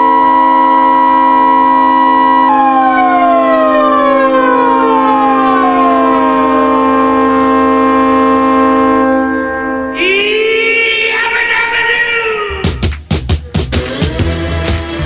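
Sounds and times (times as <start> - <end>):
goal horn blaring: 0.0 - 2.5, 4.8 - 10.5
siren winding down: 0.0 - 10.7.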